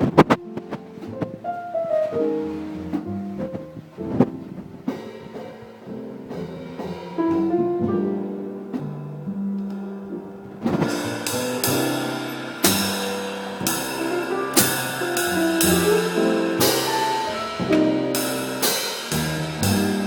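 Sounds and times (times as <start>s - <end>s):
bass drum: 2.6s - 9.4s, 10.4s - 20.0s
live band playing: 10.7s - 20.0s
cymbal crashes: 10.8s - 20.0s.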